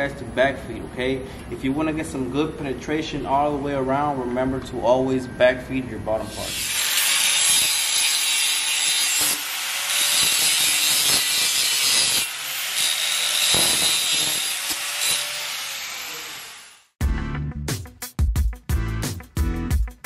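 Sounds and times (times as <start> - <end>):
welding arc crackling: 6.4 - 16.9.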